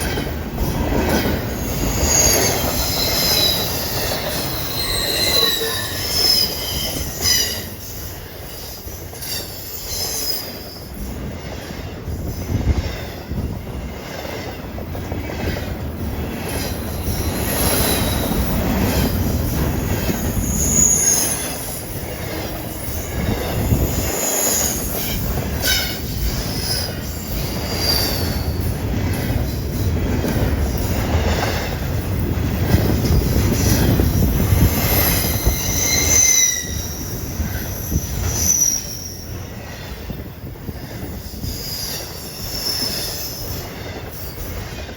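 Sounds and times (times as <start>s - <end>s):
freight train rumbling past: 0.0s - 44.9s
high-pitched wheel squeals: 1.9s - 7.8s, 20.2s - 21.8s, 34.8s - 39.3s.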